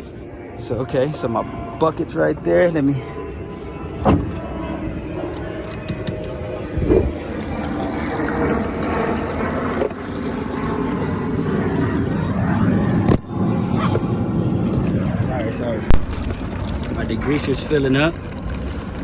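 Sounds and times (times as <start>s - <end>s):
water running into a bucket: 7.2s - 12.1s, 14.6s - 19.0s.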